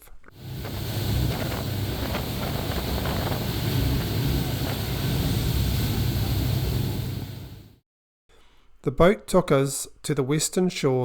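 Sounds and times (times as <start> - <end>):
boat engine humming: 0.3 - 7.7
water noise: 0.3 - 7.7
wind on microphone: 0.4 - 7.7.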